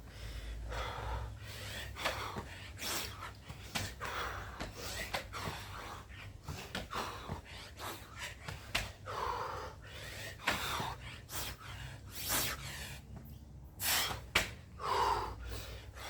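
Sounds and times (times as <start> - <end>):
person breathing hard: 0.0 - 16.0.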